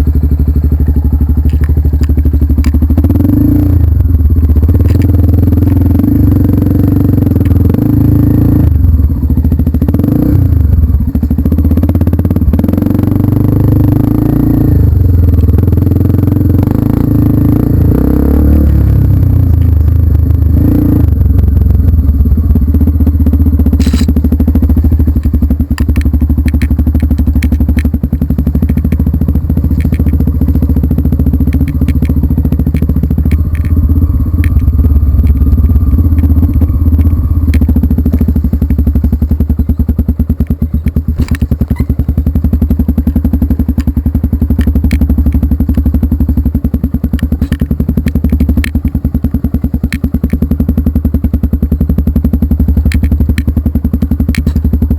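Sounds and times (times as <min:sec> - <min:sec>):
off-road vehicle engine running: 0:00.0 - 0:54.9
knocks and clatter: 0:24.9 - 0:30.7, 0:31.4 - 0:42.0, 0:46.7 - 0:50.5.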